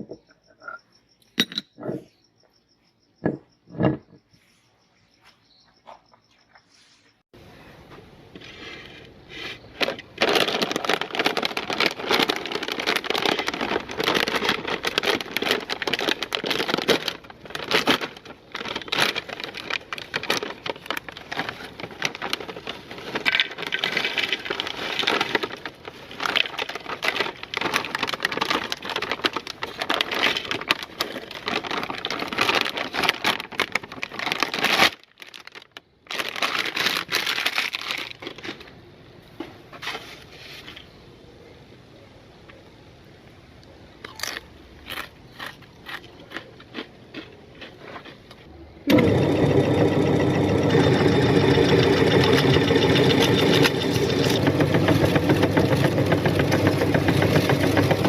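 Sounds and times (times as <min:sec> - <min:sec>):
meat grinder crunching: 0:10.0 - 0:34.9, 0:48.9 - 0:58.0.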